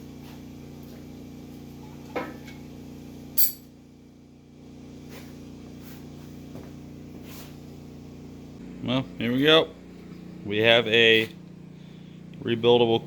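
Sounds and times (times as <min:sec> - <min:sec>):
steady low hum: 0:00.0 - 0:13.0
metal tools clinking: 0:03.4 - 0:03.7.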